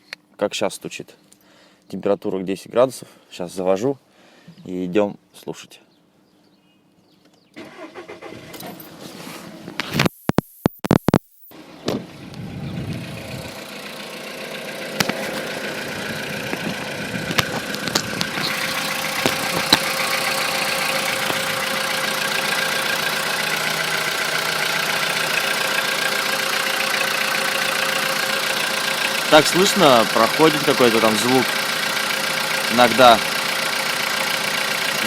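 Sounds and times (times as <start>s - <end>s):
car engine idling: 11.6s - 35.0s.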